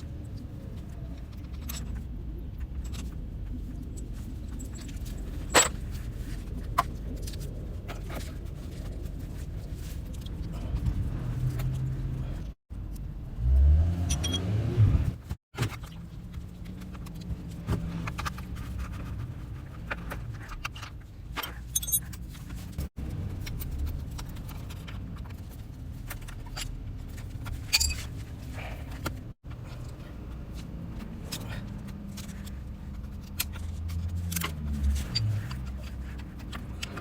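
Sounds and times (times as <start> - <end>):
metallic clicks and clinks: 20.5 - 22.3, 31.2 - 37.0.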